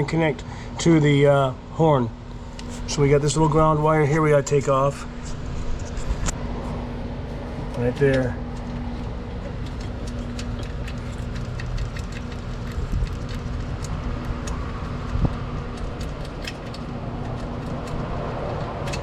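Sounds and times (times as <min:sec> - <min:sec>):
steady low hum: 0:00.0 - 0:19.0
hand tools clicking and tapping: 0:09.5 - 0:19.0.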